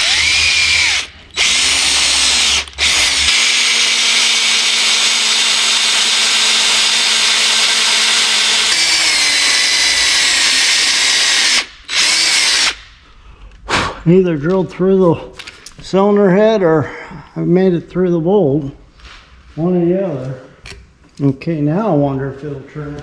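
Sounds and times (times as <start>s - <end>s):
electric drill boring metal: 0.0s - 12.8s.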